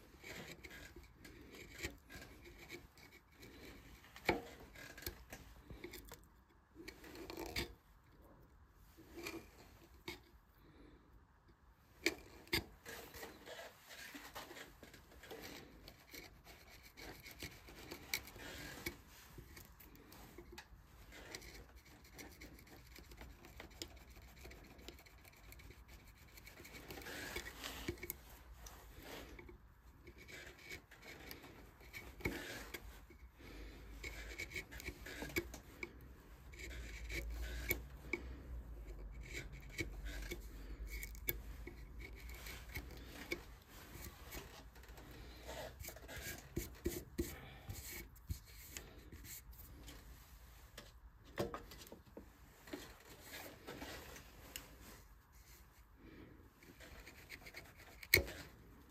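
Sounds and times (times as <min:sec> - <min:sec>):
carving tools scraping wood: 0:00.0 - 0:10.9, 0:11.8 - 0:58.9.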